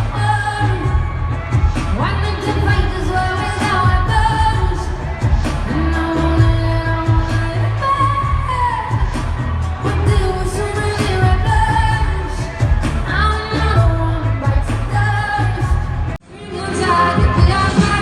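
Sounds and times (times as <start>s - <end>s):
pop music with singer: 0.0s - 18.0s.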